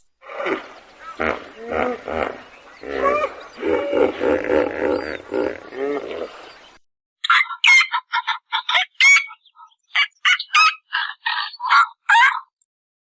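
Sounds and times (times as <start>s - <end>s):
fowl-like birds calling: 7.2s - 12.5s.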